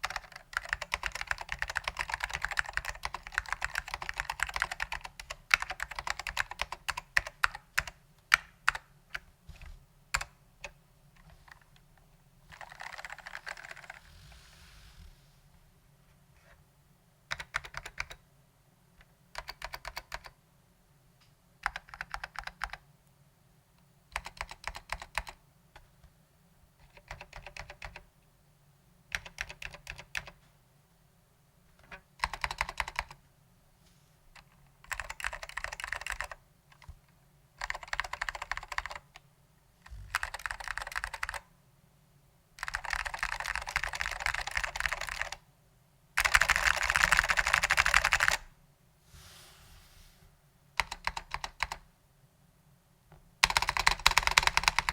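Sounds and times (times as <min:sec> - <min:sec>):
keyboard typing: 0:00.0 - 0:09.3, 0:12.5 - 0:14.0, 0:17.3 - 0:18.2, 0:19.3 - 0:20.4, 0:21.6 - 0:22.8, 0:24.1 - 0:25.4, 0:26.8 - 0:28.0, 0:29.1 - 0:30.4, 0:31.8 - 0:33.2, 0:34.4 - 0:37.0, 0:37.6 - 0:39.2, 0:40.1 - 0:41.5, 0:42.6 - 0:45.4, 0:46.2 - 0:48.5, 0:50.8 - 0:51.8, 0:53.4 - 0:54.9.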